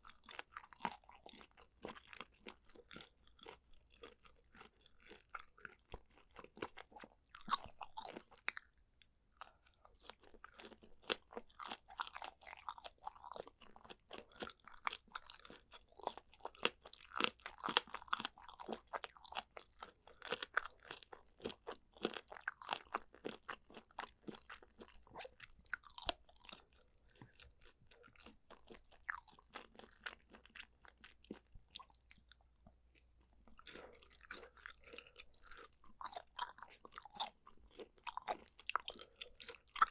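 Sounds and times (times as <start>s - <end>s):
chewing crunchy food: 0.0s - 39.9s.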